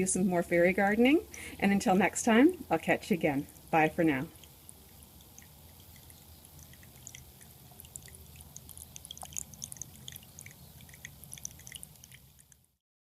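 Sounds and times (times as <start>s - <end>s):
low steady pump hum: 0.0s - 12.8s
water trickling and dripping: 0.1s - 12.8s.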